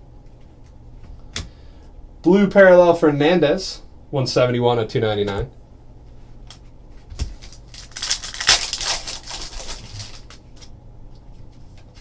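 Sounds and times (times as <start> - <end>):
foil wrappers crinkling: 7.1 - 10.7.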